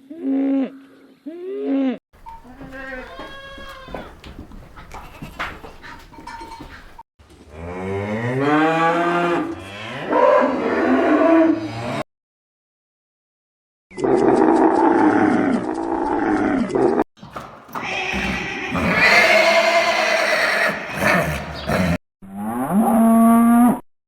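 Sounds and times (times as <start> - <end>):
farm animal calls: 2.2 - 7.0, 17.7 - 22.0.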